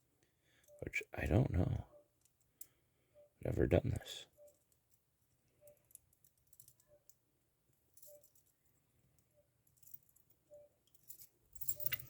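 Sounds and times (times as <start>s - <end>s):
metallic clicks of handcuffs: 5.6s - 7.2s, 9.2s - 12.0s.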